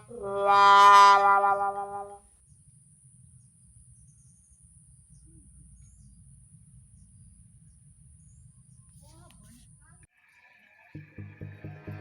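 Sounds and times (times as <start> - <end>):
low background rumble: 1.3 - 10.1
faint insect drone: 1.6 - 11.1
faint chirps: 2.4 - 12.0.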